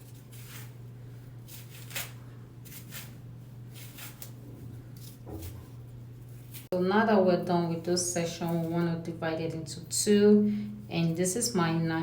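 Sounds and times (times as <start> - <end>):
comb scratching through hair: 0.0 - 6.8.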